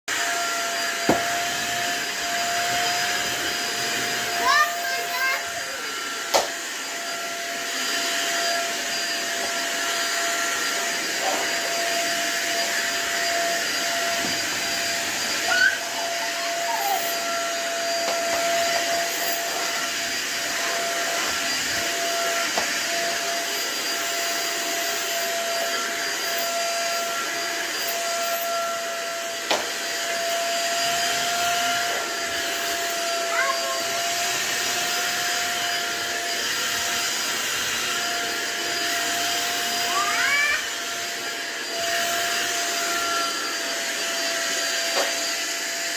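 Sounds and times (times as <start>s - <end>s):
vacuum cleaner running: 0.1s - 45.9s
vacuum cleaner knocks: 1.0s - 1.4s, 6.3s - 6.6s.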